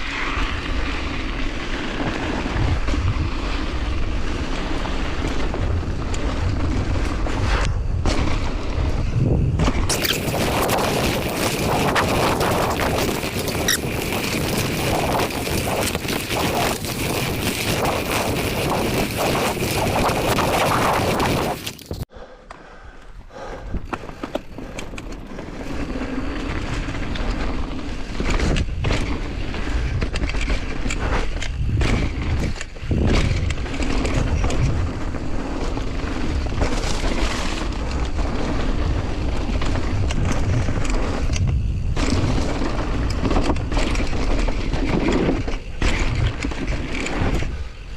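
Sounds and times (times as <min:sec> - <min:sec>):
wind buffeting the microphone: 0:00.0 - 0:22.1, 0:23.4 - 0:47.9
tyres rumbling on loose ground: 0:09.8 - 0:22.0.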